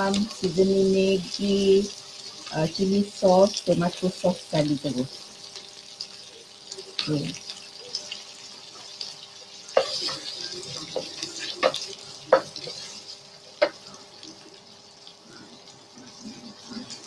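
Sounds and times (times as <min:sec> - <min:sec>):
food sizzling: 0:00.0 - 0:17.0
spatula stirring in frying pan: 0:00.0 - 0:17.0
spatula clanking against pan: 0:09.8 - 0:12.9.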